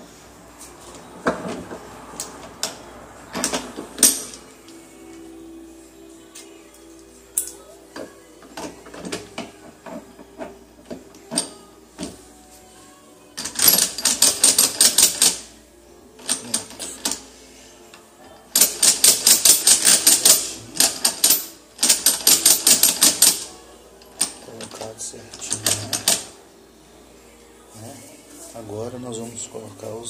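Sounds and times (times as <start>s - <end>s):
rapid metallic clicking of gears: 13.4s - 15.4s, 18.6s - 23.4s.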